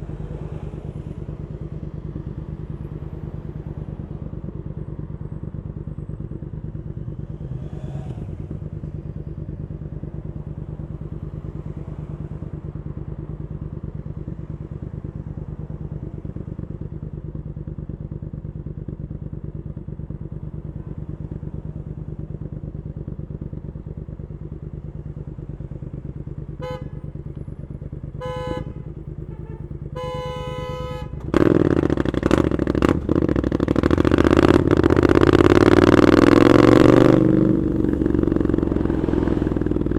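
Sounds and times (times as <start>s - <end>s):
motorcycle engine running: 0.0s - 39.9s
engine revving: 6.1s - 9.7s, 27.9s - 39.9s
vehicle horn honking: 26.5s - 27.2s, 28.1s - 31.4s.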